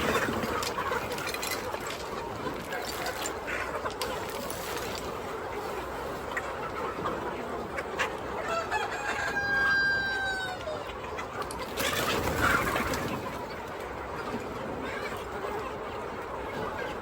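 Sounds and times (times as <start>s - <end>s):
chickens clucking: 0.0s - 17.0s
rooster crowing: 8.4s - 10.8s.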